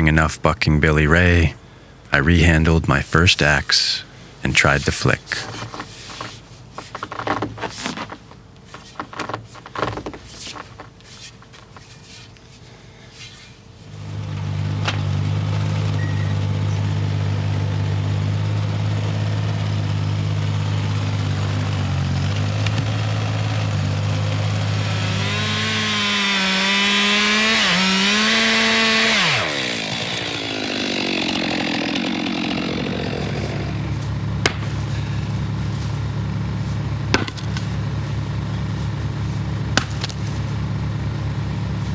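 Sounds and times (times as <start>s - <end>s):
chainsaw idling and revving: 13.9s - 41.9s
knocks: 34.4s - 34.9s, 37.1s - 37.7s.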